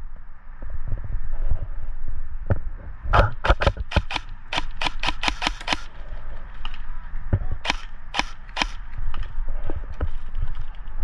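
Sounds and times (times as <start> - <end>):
airsoft guns firing: 3.5 - 6.1, 7.6 - 9.0.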